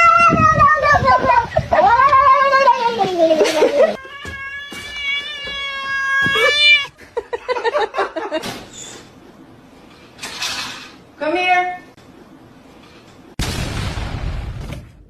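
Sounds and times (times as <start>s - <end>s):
cat yowling: 0.0s - 7.0s.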